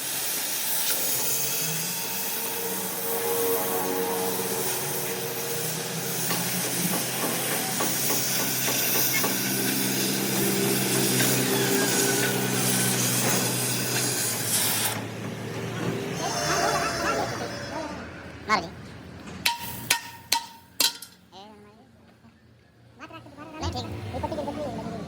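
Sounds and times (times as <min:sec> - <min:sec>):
loud steady hissing: 0:00.0 - 0:15.0.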